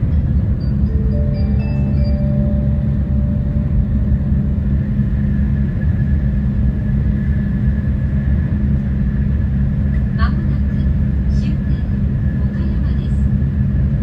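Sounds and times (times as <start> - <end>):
train running rumble: 0.0 - 14.0
faint steady high tone: 0.5 - 5.5
arrival chime: 0.6 - 5.3.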